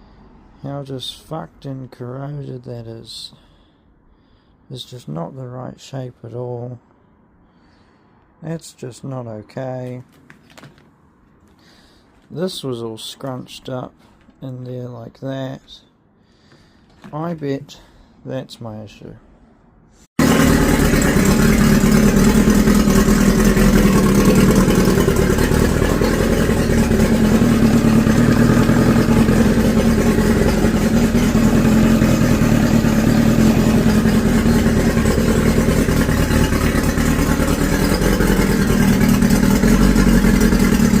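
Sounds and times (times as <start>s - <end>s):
outboard motor running: 20.2s - 41.0s.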